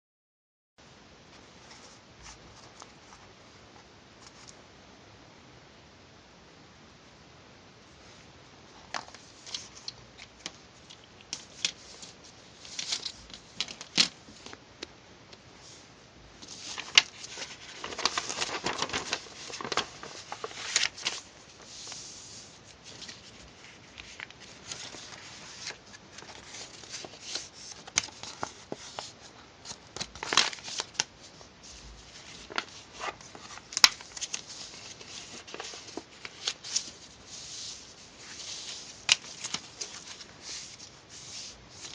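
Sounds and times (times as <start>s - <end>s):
crinkling and rustling: 8.8s - 14.9s, 15.6s - 41.9s.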